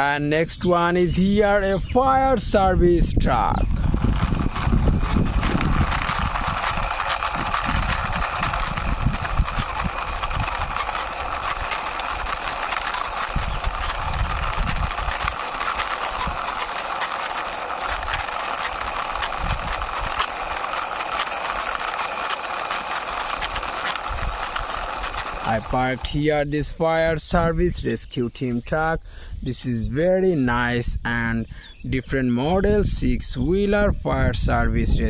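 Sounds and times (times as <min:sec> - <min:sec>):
toy truck wheels rolling and rattling: 0:02.0 - 0:26.7.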